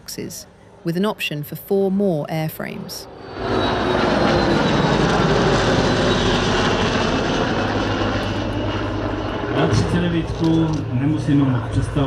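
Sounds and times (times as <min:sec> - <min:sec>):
high jet whine: 0:03.0 - 0:12.0
jet flying past: 0:03.0 - 0:12.0.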